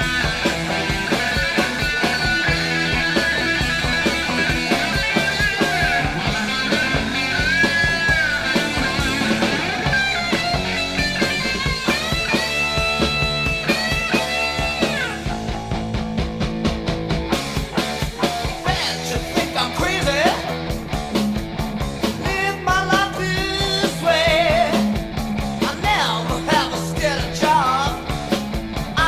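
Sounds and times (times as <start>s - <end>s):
lead electric guitar bending notes: 0.0s - 17.5s
rock music from vinyl record: 0.0s - 29.0s.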